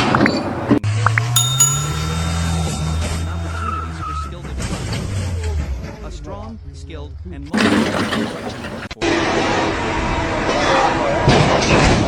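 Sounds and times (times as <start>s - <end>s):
bell-like ding ringing: 1.4s - 4.3s.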